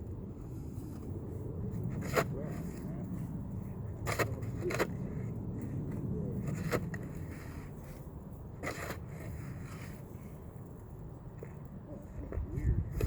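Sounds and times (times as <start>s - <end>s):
steady low rumble: 0.0s - 13.0s
snow shovel scraping pavement: 1.8s - 3.1s, 3.9s - 5.3s, 6.3s - 10.1s.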